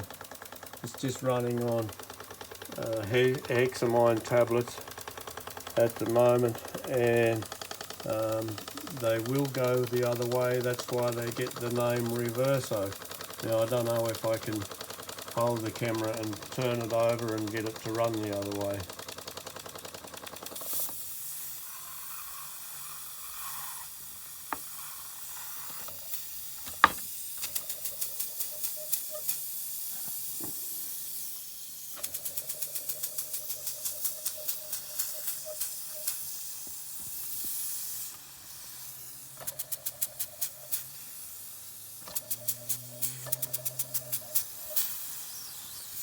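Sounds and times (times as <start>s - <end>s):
toy steam engine chuffing: 0.0s - 46.0s
sharp click: 42.0s - 45.0s.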